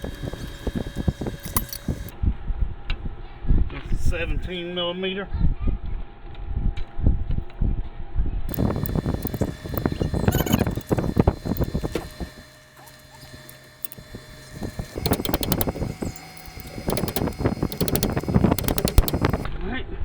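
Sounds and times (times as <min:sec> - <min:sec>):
socket wrench ratchet clicking: 0:00.0 - 0:02.1, 0:08.5 - 0:19.4.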